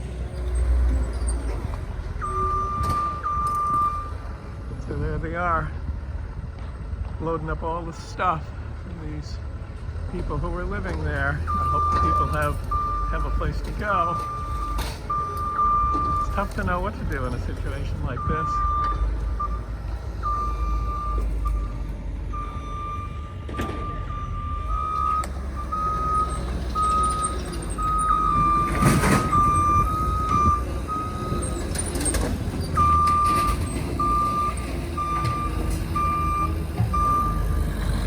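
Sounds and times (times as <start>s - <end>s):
truck reversing alarm beeping: 0.0s - 4.8s, 10.2s - 38.0s
low engine rumble: 0.0s - 38.0s
second backup alarm beeping: 18.2s - 31.6s.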